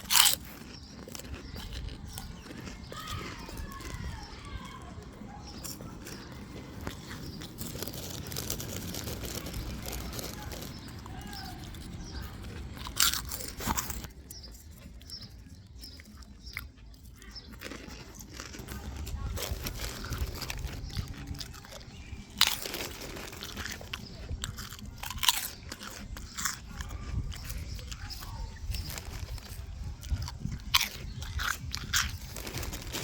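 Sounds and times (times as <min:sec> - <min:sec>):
chewing crunchy food: 0:00.0 - 0:33.0.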